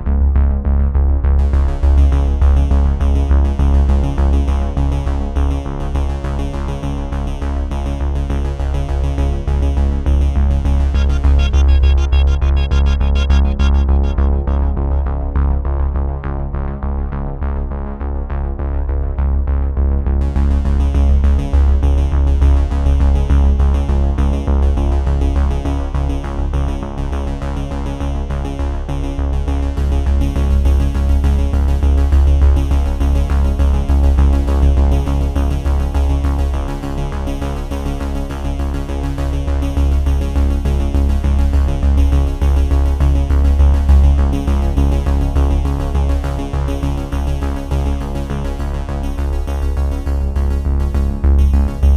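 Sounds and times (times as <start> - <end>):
electronic music with heavy bass: 9.8 - 16.3, 39.3 - 51.9.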